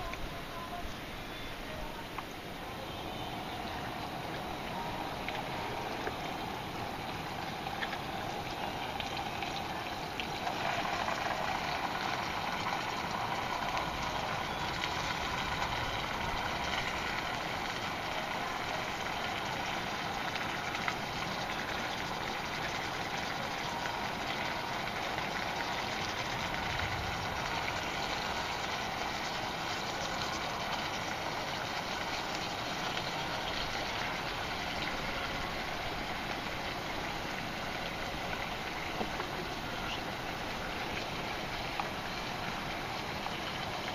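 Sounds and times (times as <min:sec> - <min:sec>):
campfire crackling: 0:00.0 - 0:43.9
steady rushing noise: 0:24.8 - 0:30.6.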